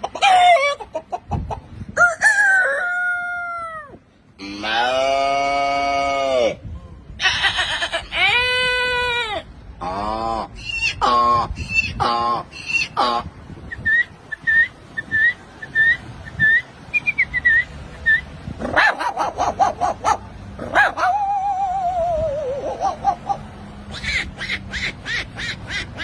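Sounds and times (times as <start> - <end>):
whistled bird chirps: 13.7 - 18.2.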